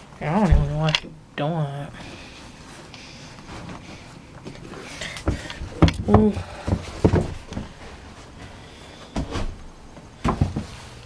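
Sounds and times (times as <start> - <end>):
handling knocks and thumps: 5.0 - 8.5, 9.1 - 10.9.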